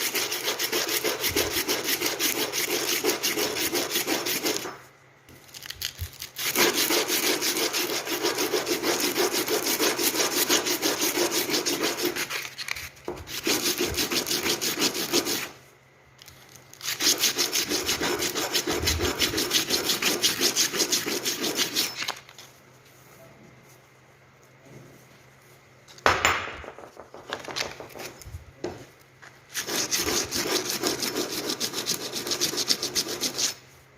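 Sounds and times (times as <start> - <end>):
hand tool strokes on wood: 6.5 - 12.5, 16.9 - 22.0.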